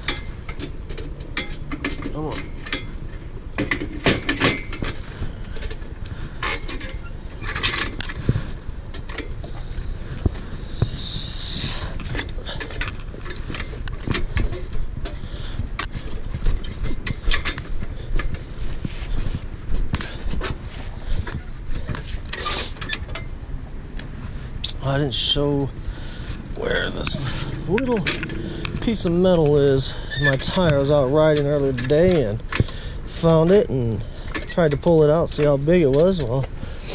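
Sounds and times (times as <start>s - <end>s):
steady low rumble: 7.9s - 12.6s
brief hiss: 9.7s - 12.1s.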